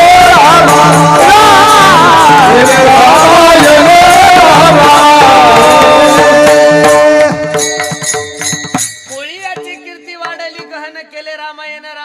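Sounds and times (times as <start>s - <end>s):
man singing: 0.0s - 7.8s
drum: 0.0s - 10.9s.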